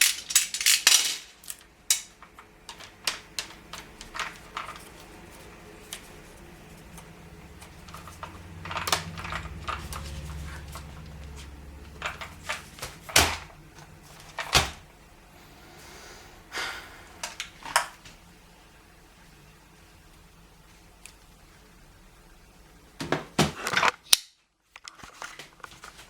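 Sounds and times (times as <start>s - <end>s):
low rumble: 6.3s - 17.6s.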